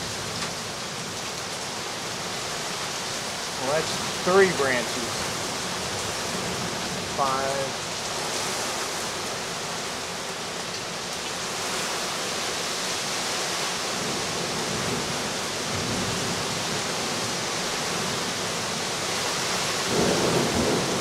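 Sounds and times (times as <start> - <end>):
heavy rain pouring: 0.0 - 21.0.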